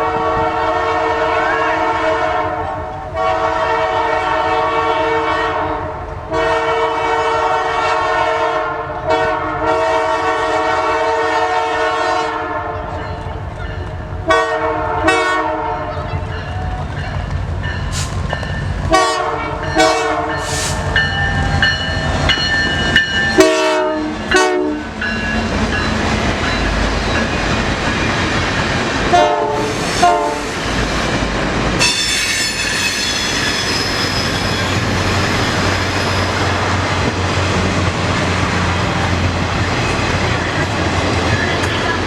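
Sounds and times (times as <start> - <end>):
locomotive air horn blasts: 0.0 - 13.0, 14.2 - 16.1, 18.9 - 20.9, 23.4 - 24.9, 29.1 - 30.5.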